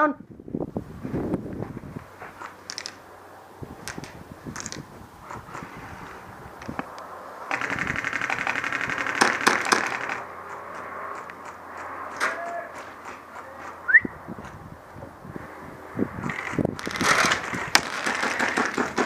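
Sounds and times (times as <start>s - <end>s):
airsoft gun full-auto rattle: 2.4s - 3.0s, 3.8s - 5.7s, 7.5s - 11.6s, 16.2s - 19.0s.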